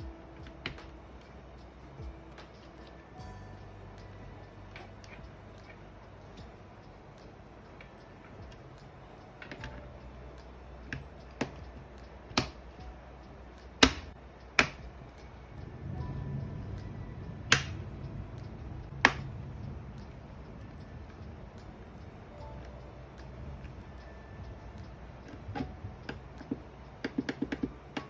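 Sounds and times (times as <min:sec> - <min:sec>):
quiet background music: 0:00.0 - 0:28.0
mechanical keyboard clacks: 0:25.2 - 0:28.0.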